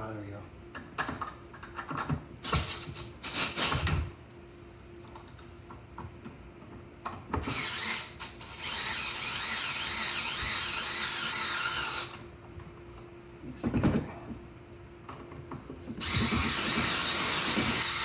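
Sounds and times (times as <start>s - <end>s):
small power drill whirring: 7.4s - 12.2s, 16.0s - 18.0s.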